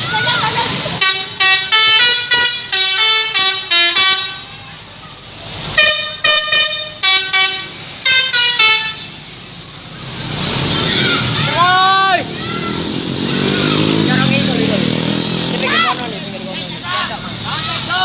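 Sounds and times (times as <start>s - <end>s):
bus musical horn: 1.0s - 4.8s, 5.8s - 9.2s.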